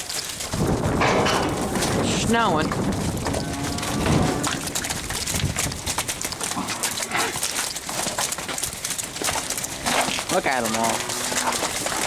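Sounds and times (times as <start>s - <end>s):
scuffling and clatter: 0.0s - 12.0s
farm animal call: 9.2s - 12.0s.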